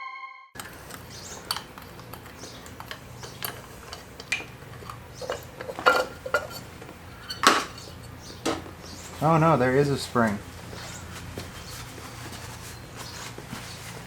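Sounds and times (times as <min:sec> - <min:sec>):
metal tools clinking: 0:00.6 - 0:08.6.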